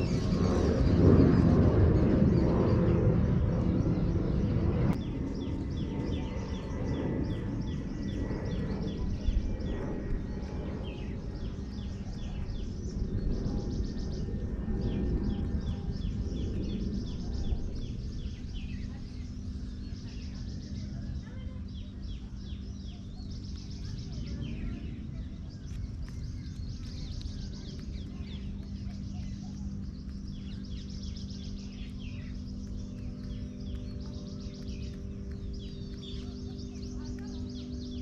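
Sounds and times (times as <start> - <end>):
low background rumble: 0.0 - 38.0
small birds chirping: 0.0 - 38.0
steady low hum: 0.0 - 38.0.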